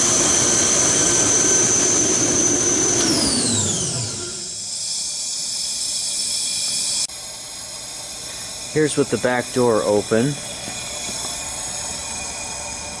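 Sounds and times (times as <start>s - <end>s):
air compressor whining: 0.0s - 13.0s
steady hiss: 4.6s - 13.0s.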